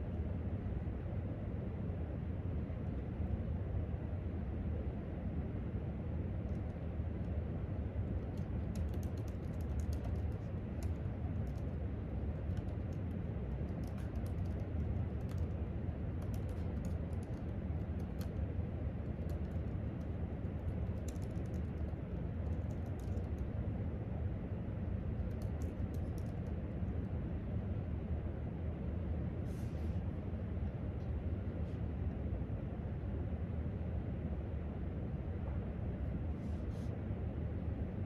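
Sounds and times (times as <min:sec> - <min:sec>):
low background rumble: 0:00.0 - 0:38.0
laptop keyboard typing: 0:08.0 - 0:15.6, 0:16.2 - 0:18.4, 0:19.0 - 0:23.5, 0:25.2 - 0:26.6.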